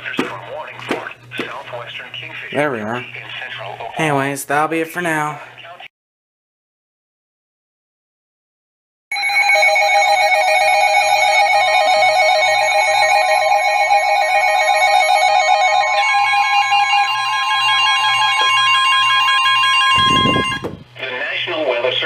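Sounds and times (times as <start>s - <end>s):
long steady tone: 9.1s - 20.8s
warbling alarm tones: 9.1s - 21.0s
pulsing low beep: 16.1s - 20.8s.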